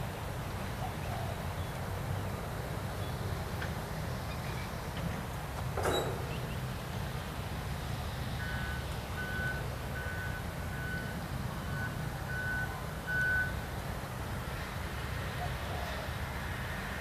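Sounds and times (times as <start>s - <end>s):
excavator diesel engine: 1.4s - 15.1s
reversing alarm beeps: 8.4s - 13.6s.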